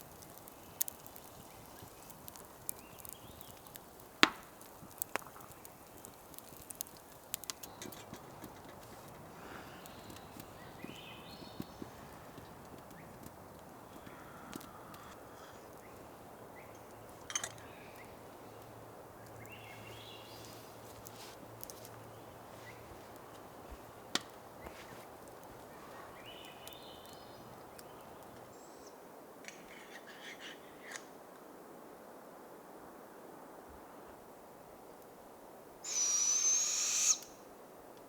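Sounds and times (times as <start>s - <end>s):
fire crackling snaps: 0.0s - 30.0s
evening forest background: 0.0s - 38.0s
owls calling: 35.8s - 37.4s.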